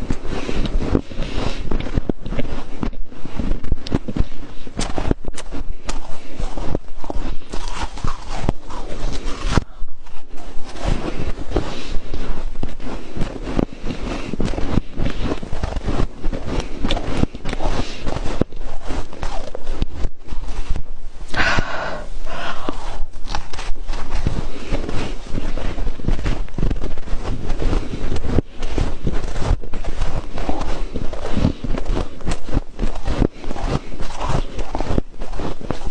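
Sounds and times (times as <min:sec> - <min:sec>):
crunching frost: 0:00.0 - 0:35.9.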